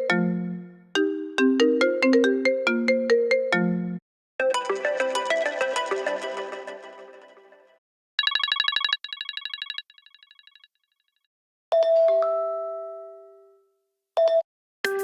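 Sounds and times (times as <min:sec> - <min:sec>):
melodic ringtone: 0:04.4 - 0:07.0.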